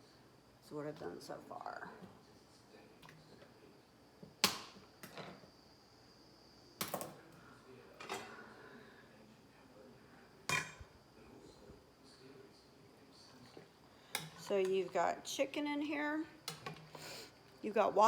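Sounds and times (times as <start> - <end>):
pots and utensils clinking: 8.0 - 8.4, 10.5 - 11.0, 13.4 - 14.9.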